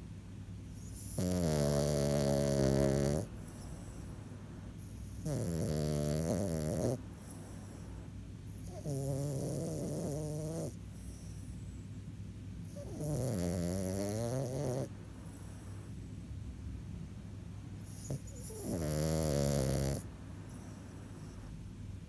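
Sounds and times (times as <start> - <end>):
dog breathing: 0.7 - 11.8, 12.7 - 16.2, 17.8 - 21.6
dog snoring: 0.8 - 4.2, 4.8 - 11.6, 12.7 - 16.0, 17.8 - 21.6.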